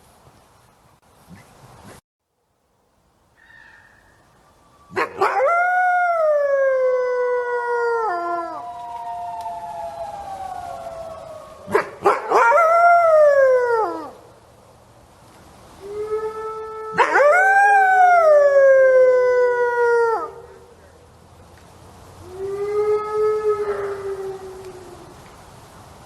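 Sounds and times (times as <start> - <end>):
wolf-like howls: 4.9 - 14.2, 22.2 - 25.1.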